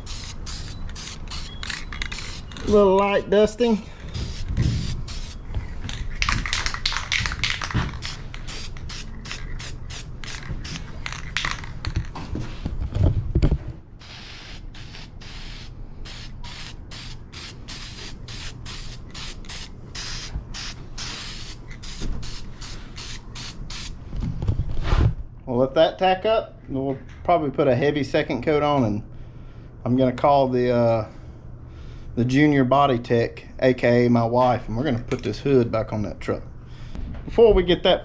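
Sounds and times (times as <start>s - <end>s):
aerosol can spraying bursts: 0.0s - 5.4s, 6.5s - 10.9s, 14.0s - 24.0s.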